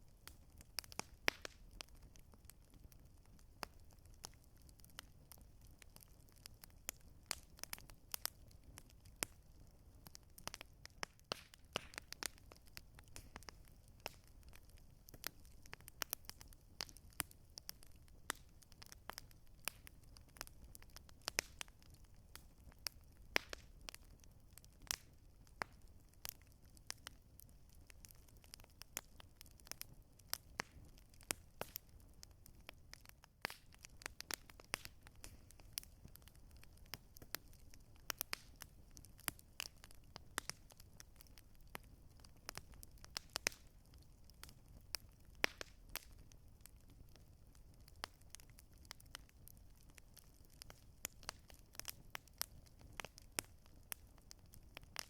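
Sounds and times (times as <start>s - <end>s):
campfire crackling and popping: 0.0s - 55.0s.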